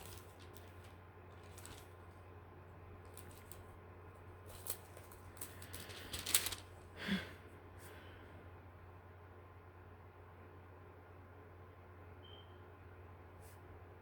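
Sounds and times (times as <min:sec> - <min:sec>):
book pages rustling: 0:00.0 - 0:02.2, 0:03.0 - 0:06.8
faint steady hum: 0:00.0 - 0:14.0.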